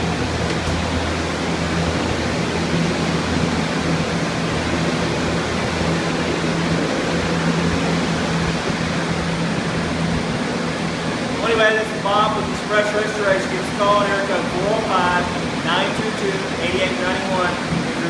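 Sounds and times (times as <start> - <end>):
low motor hum: 0.0 - 18.0
rush of air from air movers: 0.0 - 18.0.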